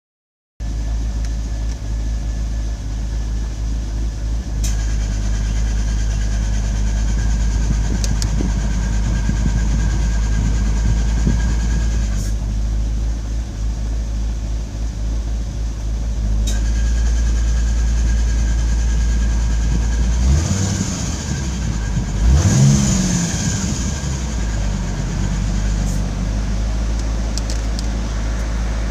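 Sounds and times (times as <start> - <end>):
car engine idling: 0.6 - 28.9
engine revving: 4.6 - 12.4, 16.4 - 28.9
compressor clutch click: 27.0 - 28.0.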